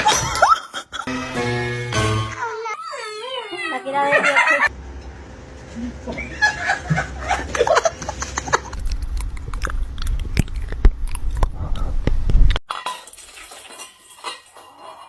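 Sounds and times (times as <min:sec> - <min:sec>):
low rumble: 0:08.7 - 0:12.6.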